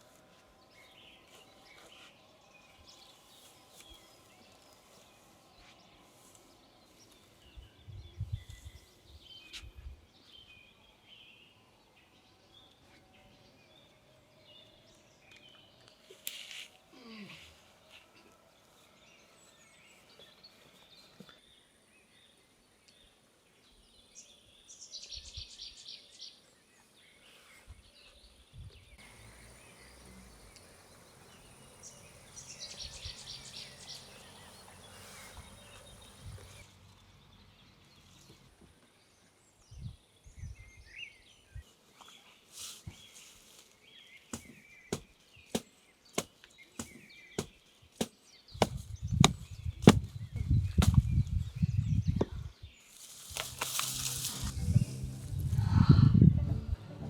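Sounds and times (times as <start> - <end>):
sharp knocks: 44.4 - 48.8, 49.9 - 50.1.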